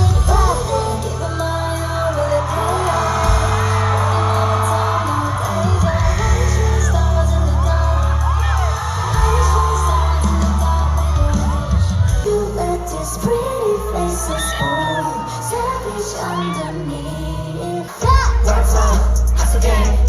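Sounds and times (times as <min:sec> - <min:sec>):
person singing: 0:00.0 - 0:20.0
pop music with heavy bass: 0:00.0 - 0:20.0.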